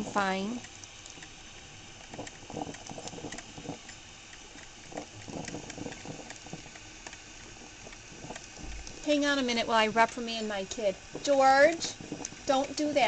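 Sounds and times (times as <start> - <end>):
coffee maker bubbling and gurgling: 0.0 - 13.0
faint hiss: 0.0 - 13.0.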